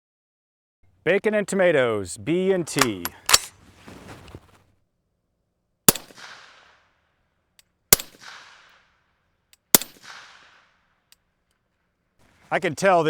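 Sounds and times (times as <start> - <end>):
suppressed rifle shots: 2.7 - 4.6, 5.9 - 6.8, 7.9 - 8.8, 9.7 - 10.7.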